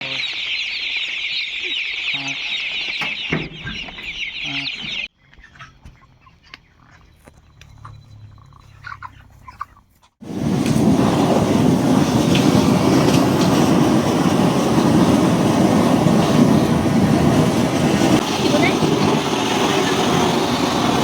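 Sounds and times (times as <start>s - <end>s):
chicks peeping in chorus: 0.0s - 10.2s, 18.2s - 20.4s
low hum: 3.6s - 21.0s
scattered clicks: 6.5s - 8.0s.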